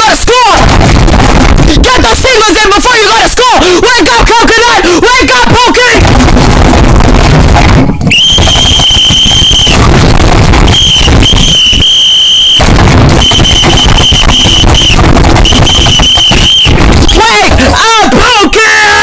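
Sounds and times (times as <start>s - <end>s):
shrill alarm tone blasts: 6.0s - 17.9s.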